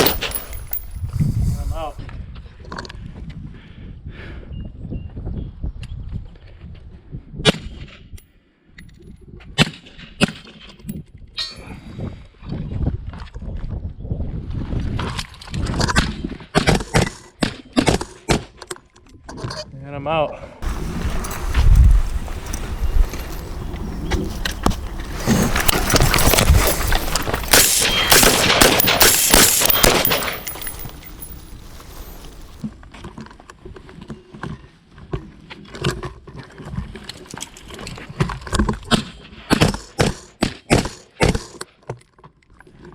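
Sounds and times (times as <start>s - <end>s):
gunshots: 0.0s - 0.9s, 25.6s - 32.6s
rapid gunfire: 27.4s - 31.0s.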